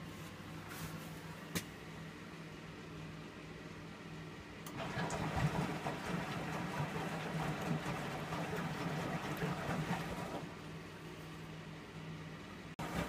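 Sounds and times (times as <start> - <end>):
washing machine drum churning: 4.7 - 10.6, 12.8 - 13.0.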